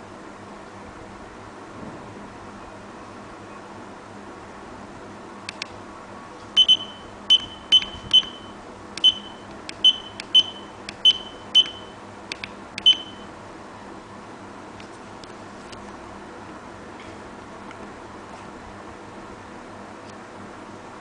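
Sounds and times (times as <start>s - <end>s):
alarm clock buzzer beeps: 6.6s - 12.0s, 12.8s - 13.2s.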